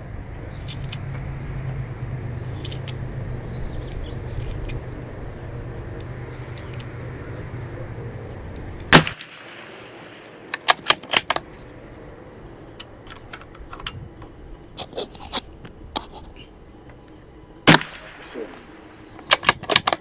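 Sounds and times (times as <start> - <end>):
sharp mechanical clicks: 0.0 - 20.0
rifle shot: 8.9 - 11.4, 17.6 - 20.0.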